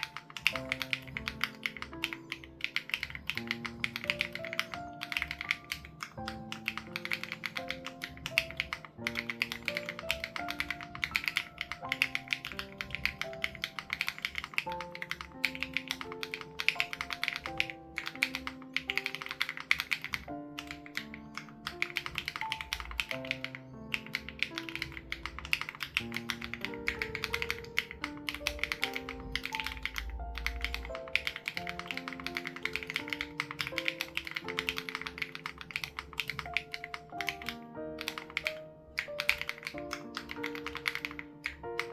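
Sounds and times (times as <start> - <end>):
mechanical keyboard typing: 0.0 - 41.9
soft background music: 0.0 - 41.9.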